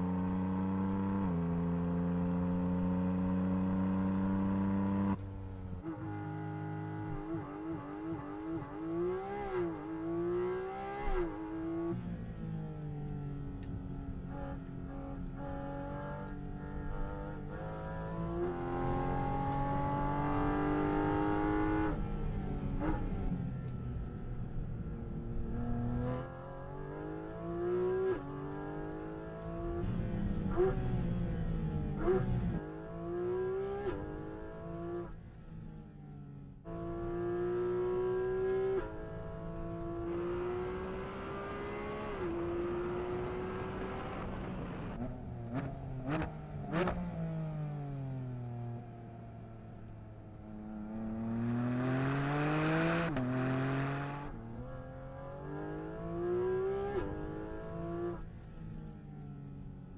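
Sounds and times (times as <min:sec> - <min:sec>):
sports car engine revving: 0:14.3 - 0:23.2, 0:36.6 - 0:48.8, 0:50.5 - 0:58.2.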